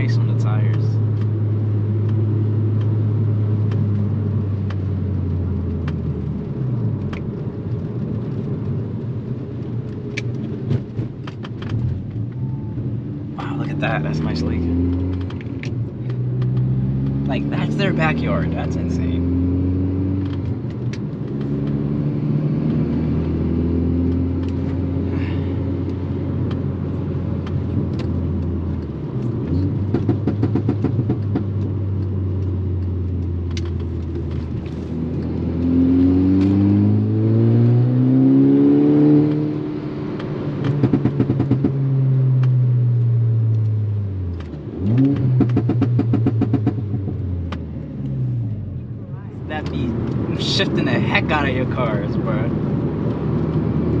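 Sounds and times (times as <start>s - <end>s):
exhaust pops and crackles: 0.0s - 19.2s, 20.1s - 21.9s, 24.1s - 35.7s, 39.2s - 54.0s
turbocharged car engine revving: 13.2s - 48.6s.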